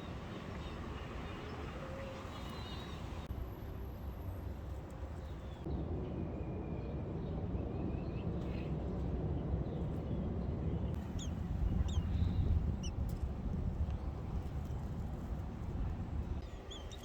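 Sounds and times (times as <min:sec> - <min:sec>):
steady low rumble: 0:07.9 - 0:16.4
small birds chirping: 0:11.0 - 0:13.2, 0:16.4 - 0:17.0.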